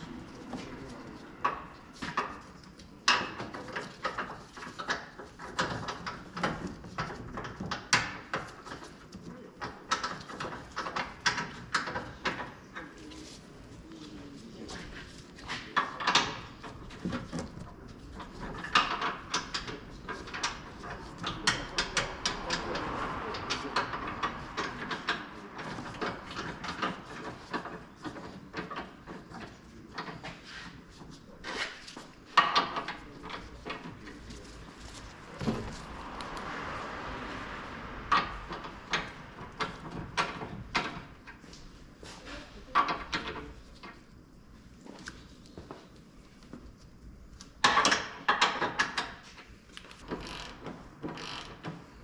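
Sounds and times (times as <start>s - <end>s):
tool scraping metal: 35.3s - 36.0s.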